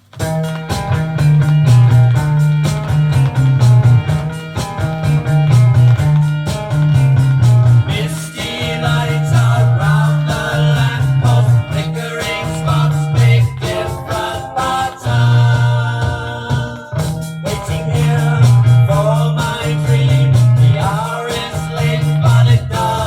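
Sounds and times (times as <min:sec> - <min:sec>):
pop rock music: 0:00.0 - 0:23.0
person singing: 0:07.8 - 0:23.0.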